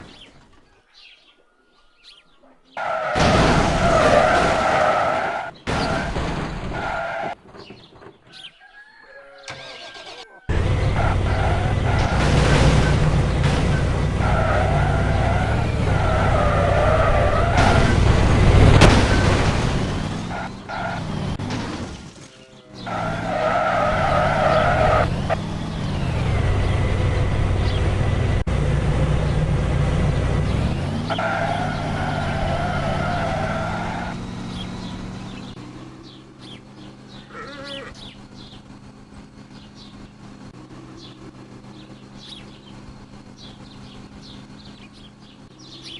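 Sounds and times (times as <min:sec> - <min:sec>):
vehicle engine: 0:09.6 - 0:45.9.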